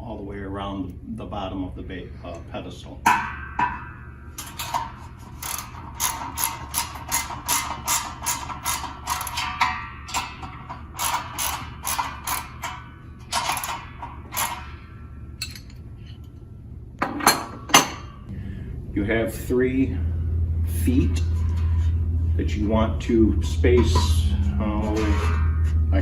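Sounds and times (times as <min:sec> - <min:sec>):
socket ratchet clicking: 0:11.0 - 0:14.6.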